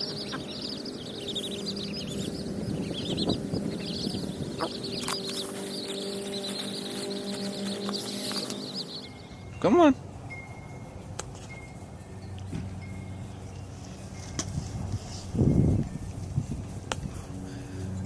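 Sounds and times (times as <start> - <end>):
birds chirping: 0.0 - 9.8.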